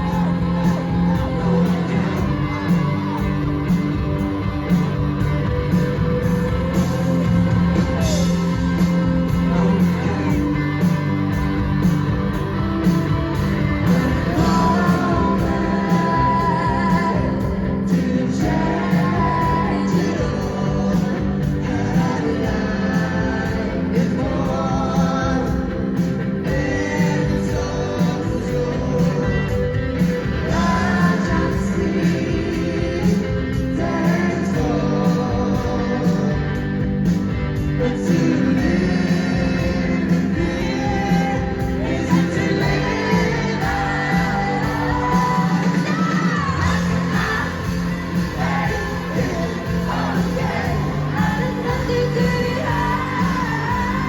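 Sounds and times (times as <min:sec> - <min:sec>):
bass guitar: 0:00.0 - 0:54.0
electric guitars: 0:00.0 - 0:54.0
steady drum beat: 0:00.0 - 0:54.0
woman singing: 0:13.9 - 0:25.7, 0:37.8 - 0:54.0.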